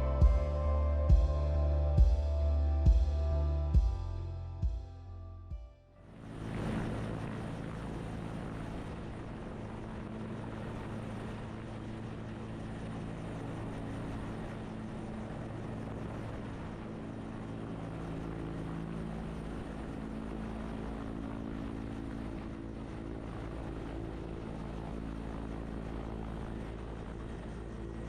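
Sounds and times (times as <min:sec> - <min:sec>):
helicopter flying: 0:06.0 - 0:28.0.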